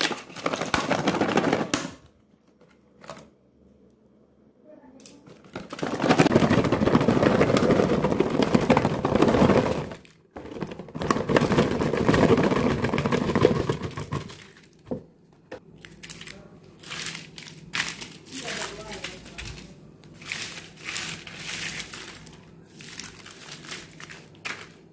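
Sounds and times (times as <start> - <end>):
plastic packaging crinkling: 5.3 - 14.9, 15.7 - 24.9.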